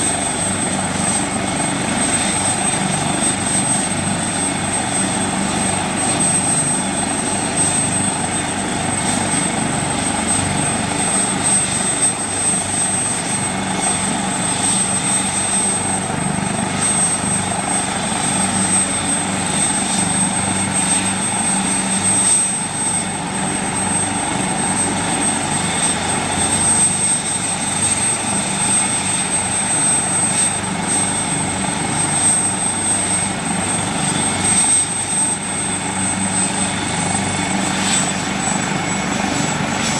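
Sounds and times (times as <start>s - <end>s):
helicopter rotor and engine rumble: 0.0s - 39.9s.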